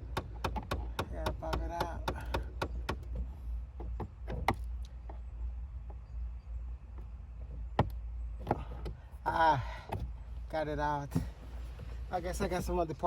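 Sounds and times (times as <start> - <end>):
plastic trim clicking and knocking: 0.0 - 4.7
steady low hum: 0.0 - 13.0.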